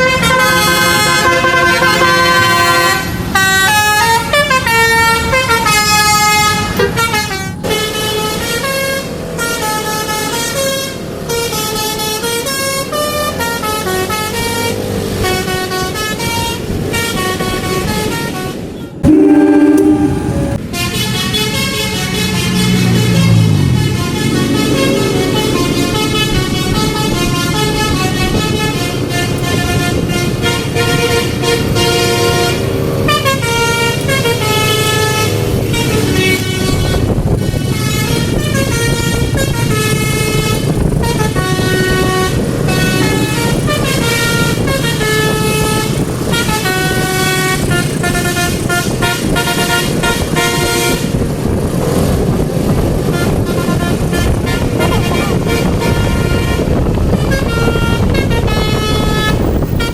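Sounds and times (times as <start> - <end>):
multi-tone horn melody: 0.0 - 9.0, 19.0 - 20.6, 53.0 - 59.9
low rumble: 19.0 - 20.6.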